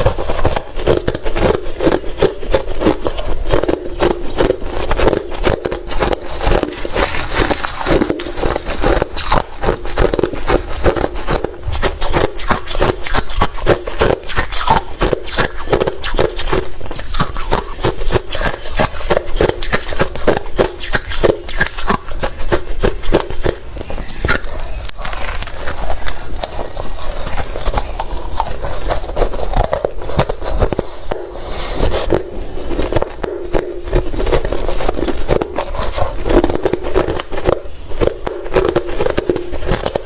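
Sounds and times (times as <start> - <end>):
chewing crunching ice: 0.0 - 40.0.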